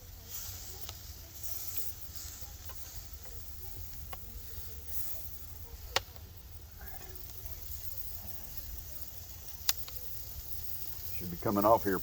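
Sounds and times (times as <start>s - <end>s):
steak sizzling on a grill: 0.0s - 12.0s
small clicks: 9.6s - 11.1s.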